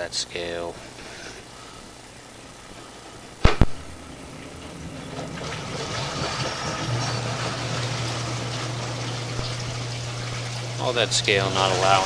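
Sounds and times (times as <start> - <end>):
steady low hum: 0.0 - 12.0
running water: 3.9 - 12.0.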